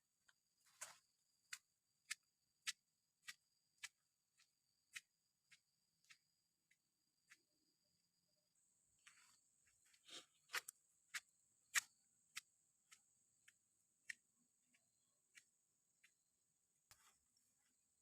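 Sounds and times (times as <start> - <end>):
faint sharp clicks and taps: 16.8 - 17.8.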